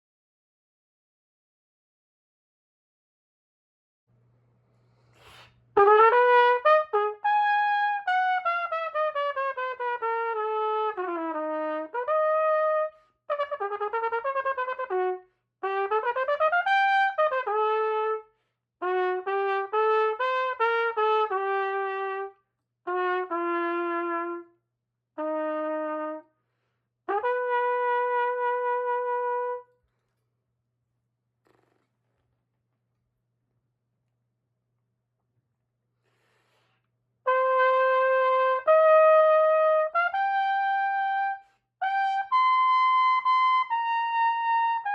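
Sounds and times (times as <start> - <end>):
solo trumpet phrases: 5.8 - 24.6, 25.2 - 26.3, 27.1 - 29.7, 37.3 - 44.9.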